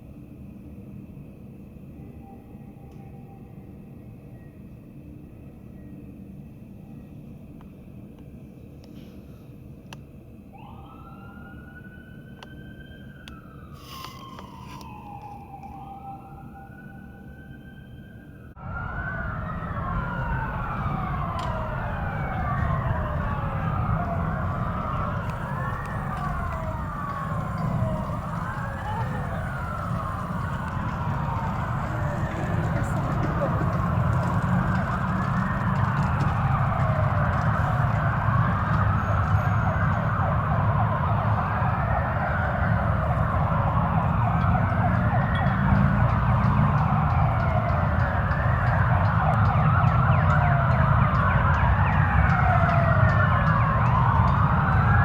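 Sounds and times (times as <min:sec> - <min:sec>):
low engine and traffic rumble: 0:00.0 - 0:55.0
sirens wailing: 0:10.5 - 0:55.0.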